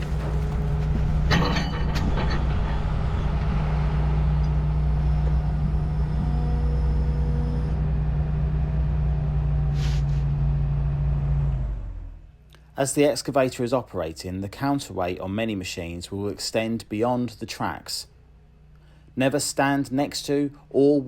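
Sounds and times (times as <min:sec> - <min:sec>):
clatter of knocks: 0:00.0 - 0:03.6
excavator diesel engine running: 0:00.0 - 0:12.2
short hiss: 0:09.8 - 0:10.2.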